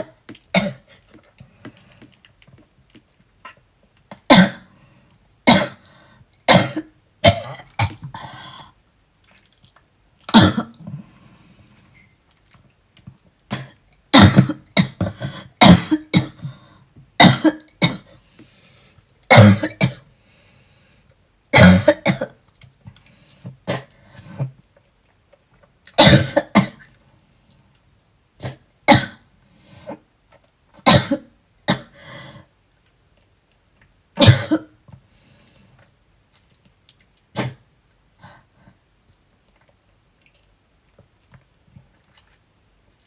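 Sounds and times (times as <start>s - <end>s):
person coughing harshly: 0.0s - 0.9s, 5.5s - 5.8s, 6.5s - 8.5s, 10.3s - 10.8s, 13.5s - 16.5s, 17.2s - 18.1s, 19.3s - 20.0s, 21.6s - 22.4s, 26.0s - 26.8s, 30.8s - 32.0s, 34.2s - 34.7s.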